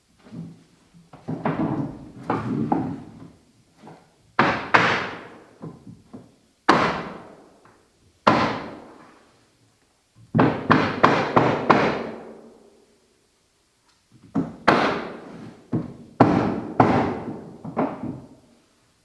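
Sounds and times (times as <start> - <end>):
hammer knocking floorboards: 0.2 - 3.4, 10.3 - 12.2, 14.2 - 18.4.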